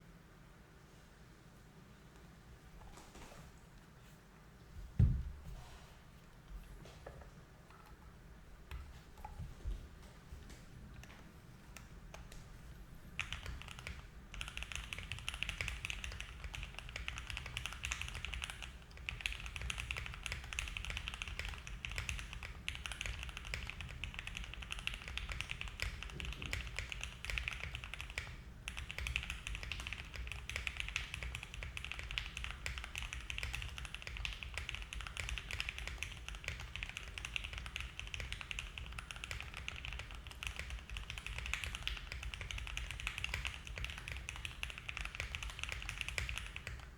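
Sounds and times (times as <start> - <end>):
mechanical keyboard typing: 13.2 - 46.9.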